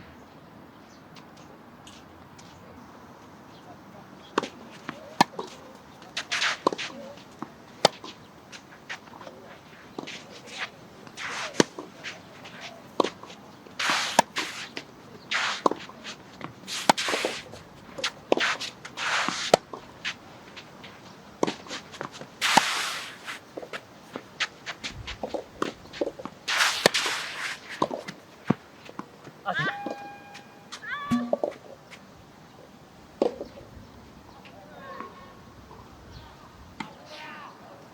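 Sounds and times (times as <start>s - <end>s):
tennis balls struck by rackets: 4.2s - 8.2s, 10.0s - 19.8s, 21.4s - 24.5s, 25.2s - 31.8s
shoes scuffing on court: 4.2s - 32.1s.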